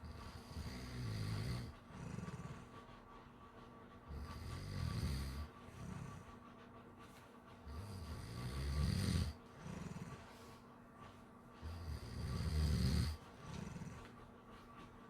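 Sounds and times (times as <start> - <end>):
dog snoring: 0.0 - 2.8, 4.1 - 6.2, 7.6 - 10.4, 11.6 - 14.3.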